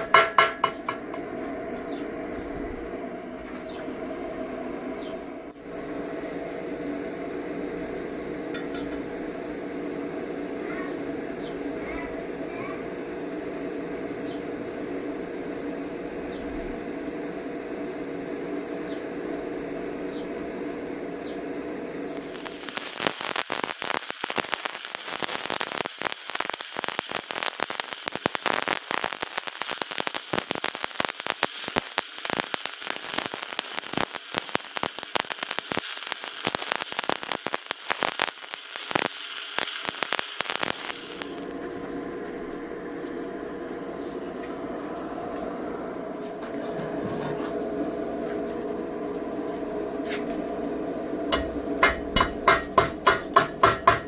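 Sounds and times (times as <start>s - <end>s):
steady electrical hum: 0.0s - 54.0s
welding arc crackling: 22.1s - 42.7s, 51.3s - 54.0s.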